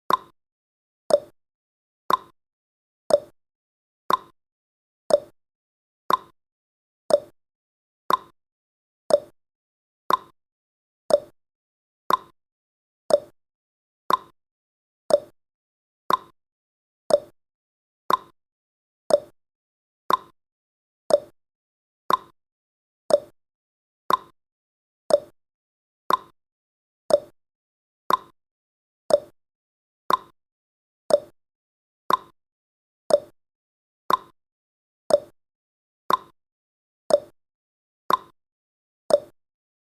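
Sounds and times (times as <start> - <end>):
clock ticking: 0.1 - 0.3, 1.1 - 1.3, 2.1 - 2.3, 3.1 - 3.3, 4.1 - 4.3, 5.1 - 5.3, 6.1 - 6.3, 7.1 - 7.3, 8.1 - 8.3, 9.1 - 9.3, 10.1 - 10.3, 11.1 - 11.3, 12.1 - 12.3, 13.1 - 13.3, 14.1 - 14.3, 15.1 - 15.3, 16.1 - 16.3, 17.1 - 17.3, 18.1 - 18.3, 19.1 - 19.3, 20.1 - 20.3, 21.1 - 21.3, 22.1 - 22.3, 23.1 - 23.3, 24.1 - 24.3, 25.1 - 25.3, 26.1 - 26.3, 27.1 - 27.3, 28.1 - 28.3, 29.1 - 29.4, 30.1 - 30.3, 31.1 - 31.3, 32.1 - 32.4, 33.1 - 33.4, 34.1 - 34.4, 35.1 - 35.4, 36.1 - 36.4, 37.1 - 37.4, 38.1 - 38.4, 39.1 - 39.4.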